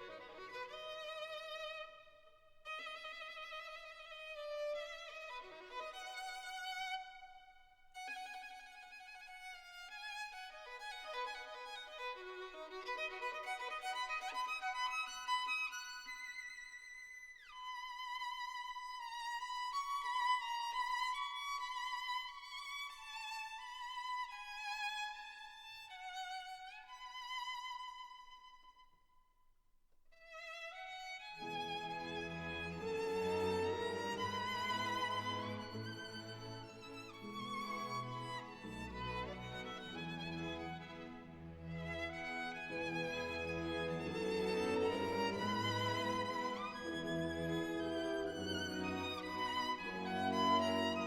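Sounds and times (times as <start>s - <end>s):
solo violin melody: 0.0s - 28.8s, 30.2s - 51.0s
fuller musical accompaniment: 31.4s - 51.0s.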